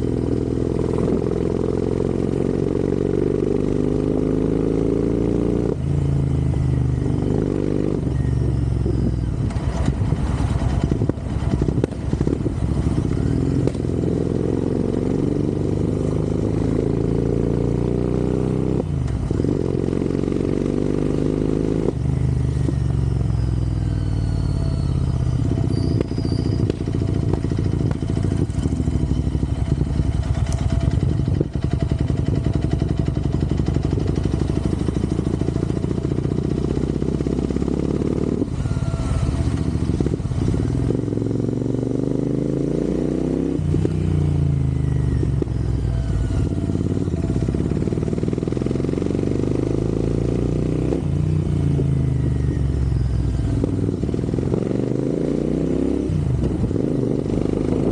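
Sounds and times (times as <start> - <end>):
motorcycle engine accelerating: 0.0 - 57.9
road and wind noise: 0.0 - 57.9.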